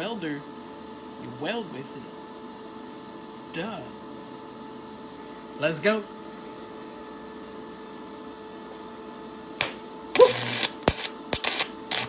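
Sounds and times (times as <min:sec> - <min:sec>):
steady hum: 0:09.6 - 0:12.0
welding arc crackling: 0:09.6 - 0:12.0.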